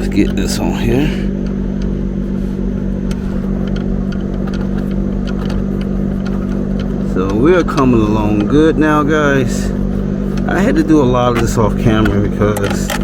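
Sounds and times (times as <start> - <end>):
motor hum with low rumble: 0.0 - 13.0
light clicks and knocks of handling: 3.0 - 8.7, 9.8 - 13.0.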